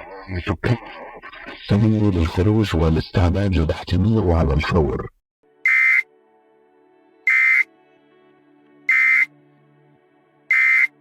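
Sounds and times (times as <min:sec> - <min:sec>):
electronic alert beeps: 0:07.3 - 0:07.6.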